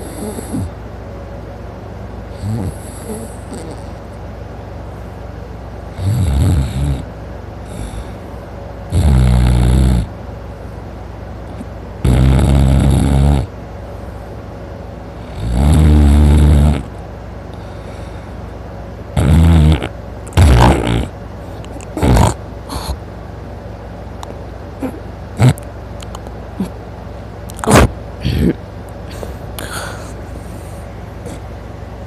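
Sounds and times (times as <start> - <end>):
man snoring loudly: 0.0 - 0.7, 2.4 - 4.0, 6.0 - 7.1, 7.7 - 8.2, 8.9 - 10.1, 12.0 - 13.5, 15.3 - 16.9, 19.2 - 21.1, 22.0 - 23.0.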